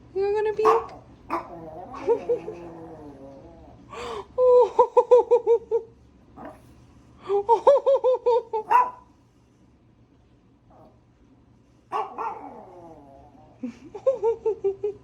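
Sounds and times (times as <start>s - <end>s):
puppy yelping: 11.9s - 13.0s.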